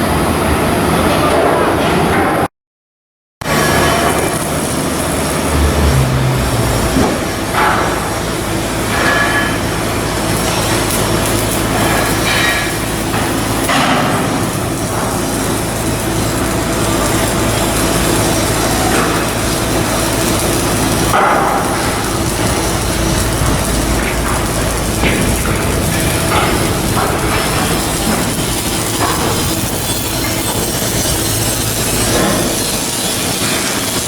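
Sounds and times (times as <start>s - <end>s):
mechanical din: 5.5s - 8.0s.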